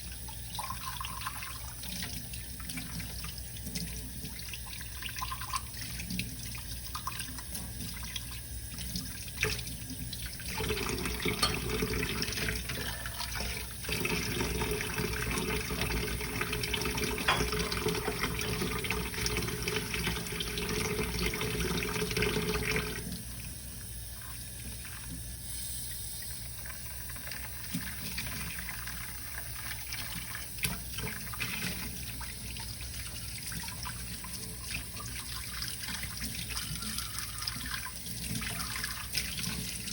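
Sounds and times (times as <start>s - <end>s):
tap water running: 0.0s - 39.9s
dishes knocking: 11.3s - 11.8s, 17.2s - 18.6s.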